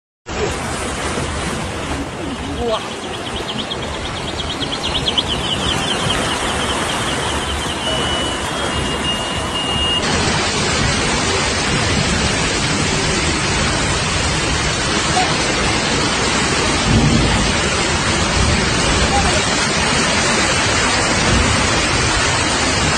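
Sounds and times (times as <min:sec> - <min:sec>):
loud rush of floodwater: 0:00.3 - 0:22.9
faint rapid high chirping: 0:02.5 - 0:10.0.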